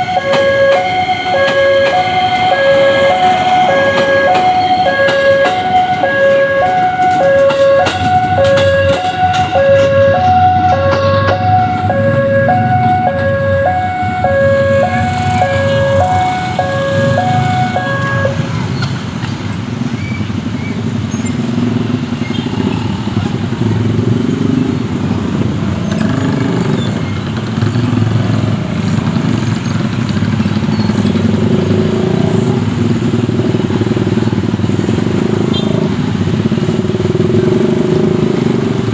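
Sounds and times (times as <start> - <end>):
level crossing alarm two-tone: 0.0 - 18.8
low rumble of vehicles: 0.0 - 38.9.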